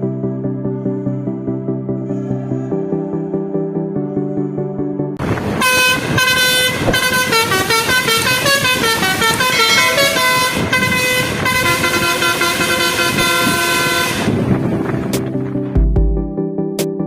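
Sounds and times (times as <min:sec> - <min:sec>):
multi-tone bus horn melody: 0:05.4 - 0:14.8.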